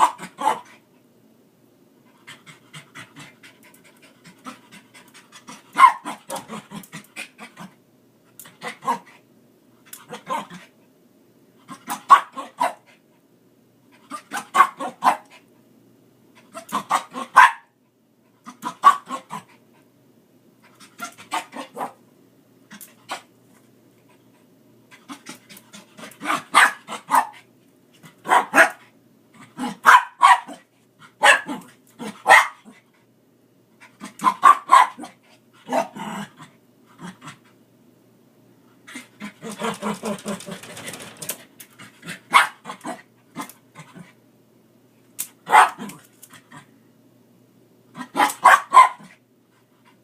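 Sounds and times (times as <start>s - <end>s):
dog snapping and barking: 5.8s - 7.1s, 39.2s - 41.8s, 45.2s - 46.4s, 48.2s - 48.7s.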